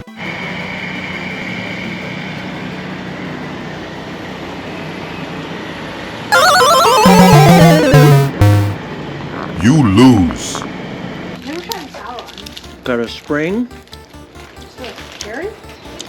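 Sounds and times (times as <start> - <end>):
loud music with falling melody: 6.3 - 8.8.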